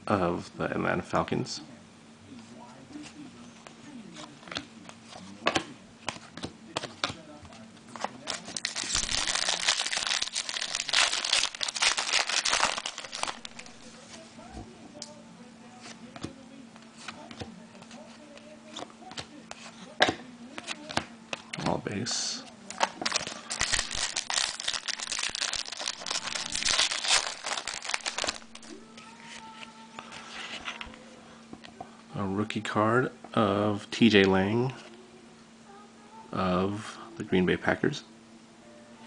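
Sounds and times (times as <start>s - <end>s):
foil wrapper crinkling and tearing: 8.2s - 13.9s, 23.0s - 29.6s.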